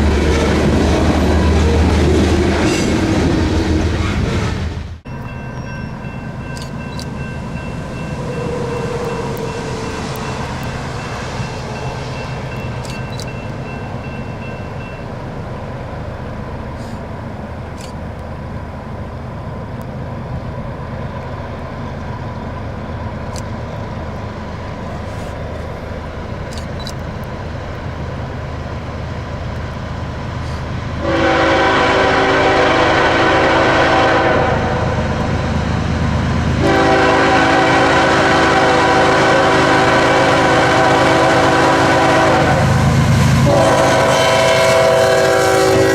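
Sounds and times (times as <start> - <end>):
diesel locomotive rumbling: 0.0 - 45.9
train air horn blasts: 8.1 - 11.8, 31.0 - 35.1, 36.6 - 45.9.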